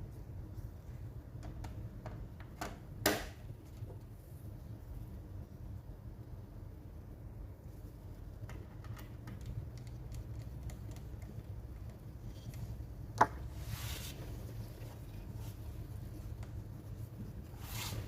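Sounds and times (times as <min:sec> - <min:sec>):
small clicks and taps: 0:08.4 - 0:13.4.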